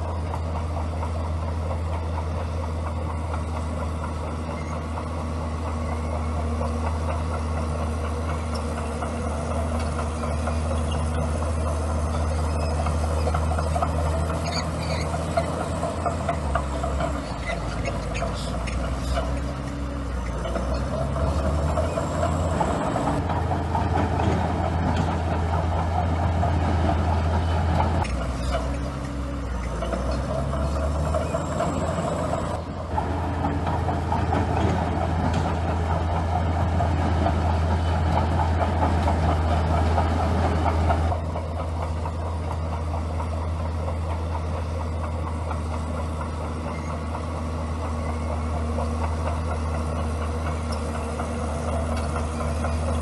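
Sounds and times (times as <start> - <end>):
bulldozer diesel engine clattering: 0.0 - 53.0.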